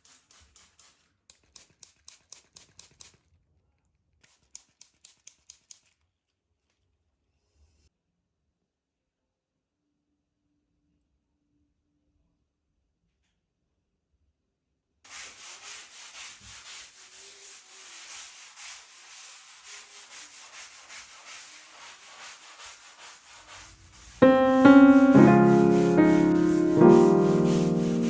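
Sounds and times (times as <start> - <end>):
scratchy rubbing strokes: 15.1 - 28.0
piano music: 24.2 - 28.0.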